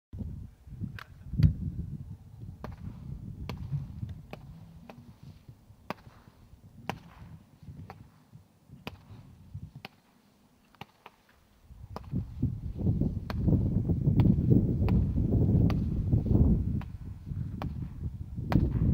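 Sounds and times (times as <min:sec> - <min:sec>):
wind rumble on microphone: 0:00.2 - 0:09.9, 0:11.6 - 0:18.9
fireworks cake firing pops: 0:02.6 - 0:05.1, 0:05.9 - 0:08.1, 0:08.8 - 0:09.2.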